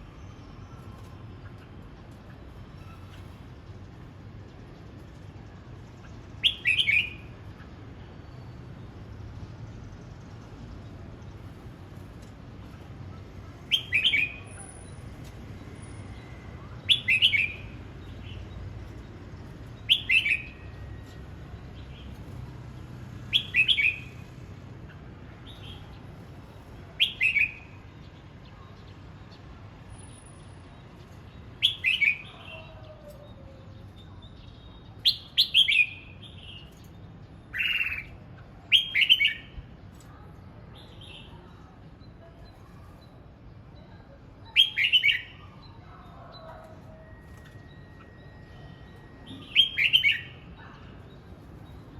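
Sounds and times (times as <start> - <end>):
bird whistled song: 6.4 - 7.3, 13.7 - 15.0, 15.8 - 18.5, 19.8 - 21.1, 23.3 - 24.2, 26.9 - 27.8, 31.6 - 32.7, 34.4 - 36.7, 37.5 - 39.6, 44.4 - 45.8, 47.5 - 50.8.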